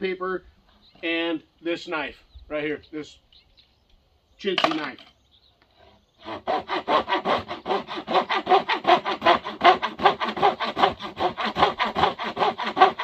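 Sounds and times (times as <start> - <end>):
hand tool scraping wood: 5.8 - 13.0.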